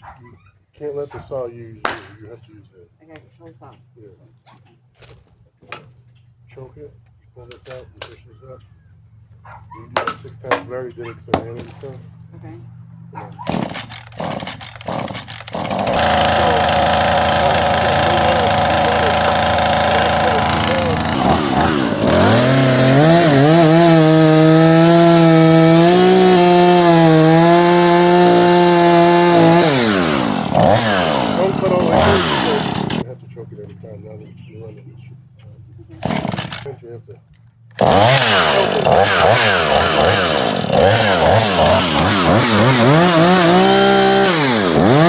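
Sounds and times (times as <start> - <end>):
chainsaw revving: 13.4 - 33.1, 36.0 - 36.8, 37.7 - 45.0.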